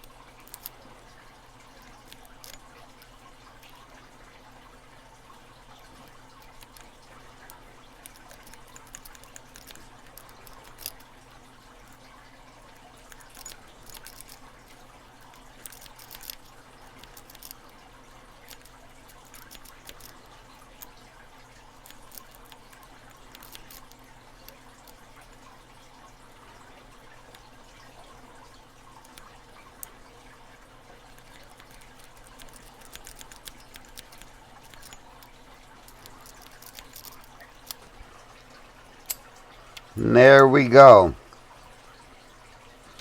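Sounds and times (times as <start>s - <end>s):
lock pick clicking and scratching: 7.5s - 11.0s, 13.2s - 14.4s, 15.4s - 17.7s, 18.4s - 20.2s, 21.9s - 23.9s, 31.2s - 35.3s, 35.9s - 37.9s.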